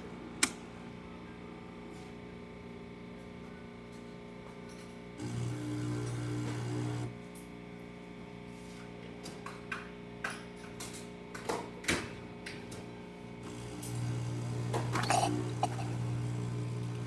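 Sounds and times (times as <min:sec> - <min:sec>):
espresso machine pump hum: 0:05.2 - 0:07.2, 0:13.4 - 0:17.0.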